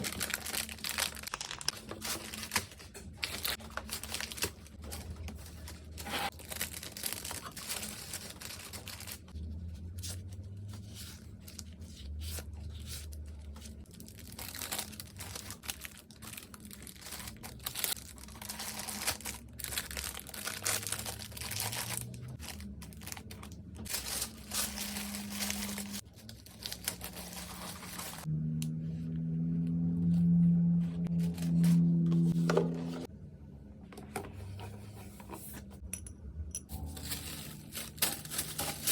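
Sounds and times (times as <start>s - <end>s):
packaging tearing: 0.0s - 2.6s
plastic and paper crinkling: 0.0s - 28.3s, 36.7s - 38.9s.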